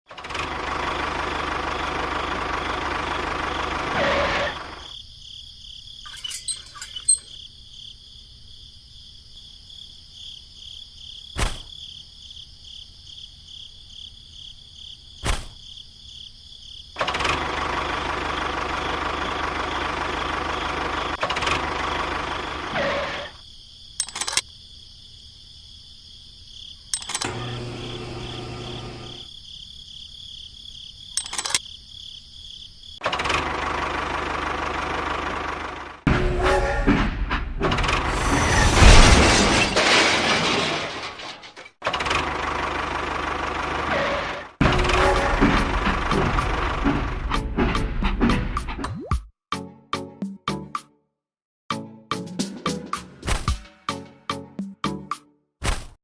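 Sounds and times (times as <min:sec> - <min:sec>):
small motor running: 0:27.2 - 0:29.3.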